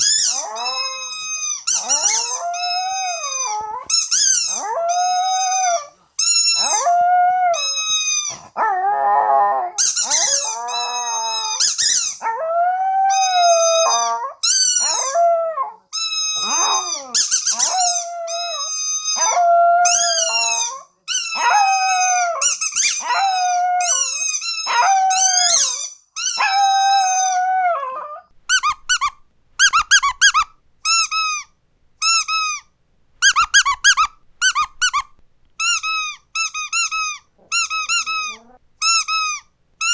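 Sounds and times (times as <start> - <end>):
dog howling: 0.0 - 6.0, 6.6 - 28.3
squeaky dog toy squeaking: 0.0 - 8.6, 9.8 - 12.3, 13.0 - 27.6, 28.5 - 39.9.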